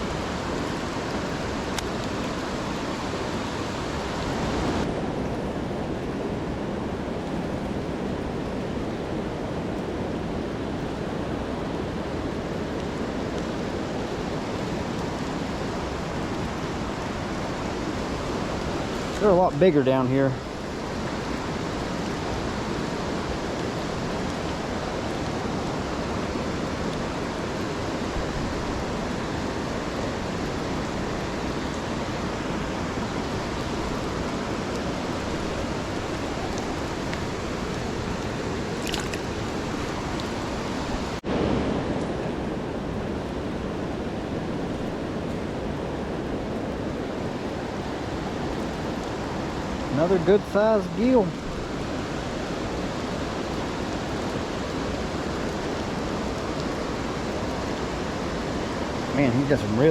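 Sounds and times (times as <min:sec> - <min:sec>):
creek water rushing: 0:00.0 - 0:59.9.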